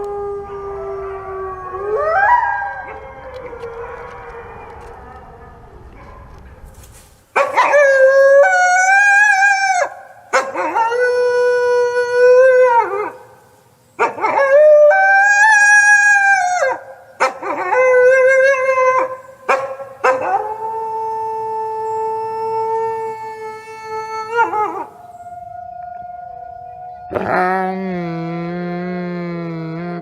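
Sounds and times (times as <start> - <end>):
wolves howling: 0.0 - 6.7, 20.0 - 27.7.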